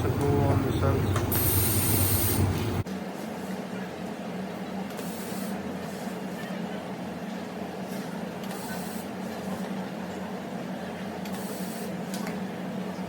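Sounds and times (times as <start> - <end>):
machine hum: 0.0 - 2.8
hiss of noise: 1.2 - 3.4, 4.9 - 6.2.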